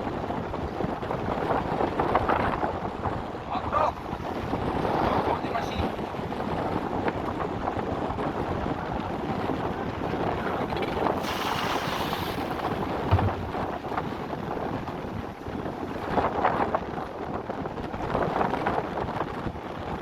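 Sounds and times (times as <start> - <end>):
rush of wind and water: 0.0 - 20.0
wind buffeting microphone: 0.0 - 20.0
short knock: 13.0 - 13.8.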